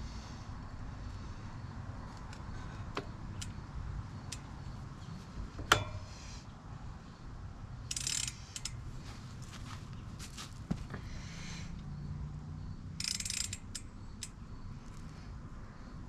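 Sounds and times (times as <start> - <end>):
metal bicycle parts clinking: 4.2 - 6.2, 7.9 - 8.8, 13.0 - 14.4.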